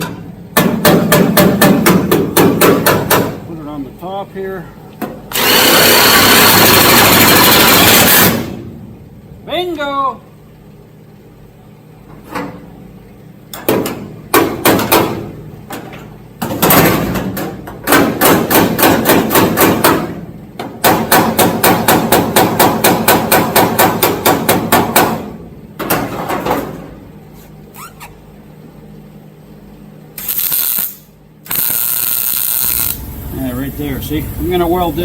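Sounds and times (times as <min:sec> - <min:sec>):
hammering on steel panel: 0:00.0 - 0:03.4, 0:13.6 - 0:15.4, 0:16.4 - 0:26.0
burst of steady noise: 0:05.3 - 0:08.6, 0:30.2 - 0:35.0.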